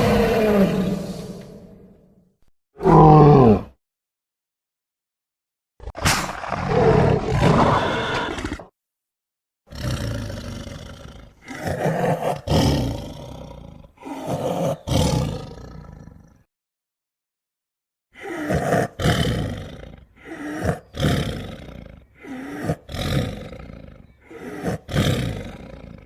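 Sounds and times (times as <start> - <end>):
dinosaur roars: 0.0 - 2.0, 2.8 - 3.8, 6.3 - 8.6, 9.7 - 16.4, 18.2 - 26.0.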